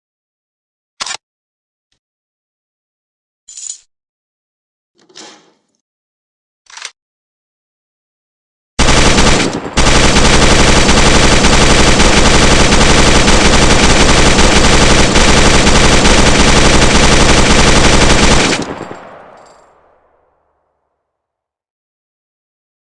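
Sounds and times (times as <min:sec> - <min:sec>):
machine gun firing bursts: 0:08.8 - 0:19.6.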